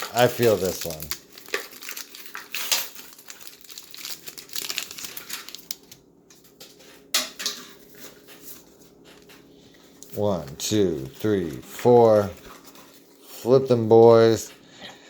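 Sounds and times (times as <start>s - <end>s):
wrapper tearing open: 0.0s - 6.0s
foil wrapper crinkling: 0.0s - 6.8s, 7.8s - 13.8s.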